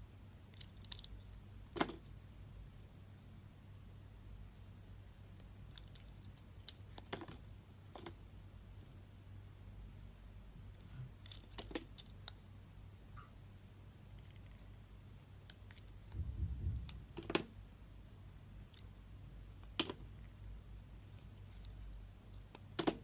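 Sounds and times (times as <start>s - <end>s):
dull low thud: 16.1s - 17.0s.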